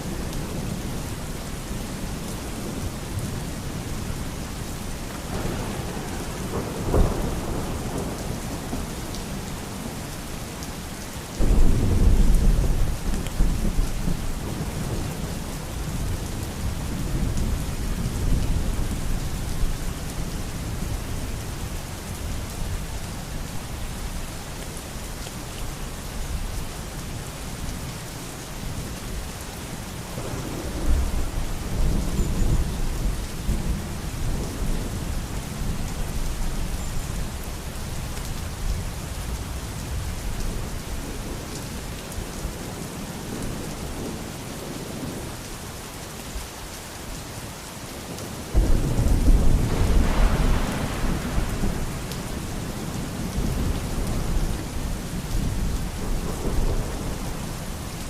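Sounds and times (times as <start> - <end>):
steady rain falling: 0.0 - 58.0
rolling thunder: 5.3 - 9.0, 11.4 - 15.2, 48.5 - 57.4.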